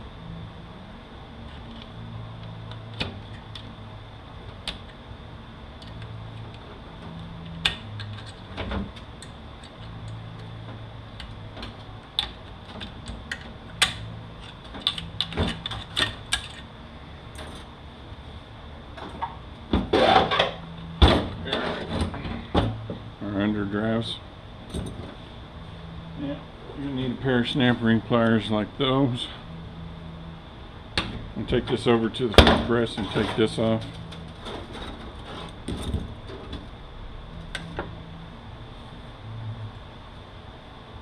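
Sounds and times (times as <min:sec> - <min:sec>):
low hum: 0:00.0 - 0:41.0
metal parts clicking: 0:11.2 - 0:16.6.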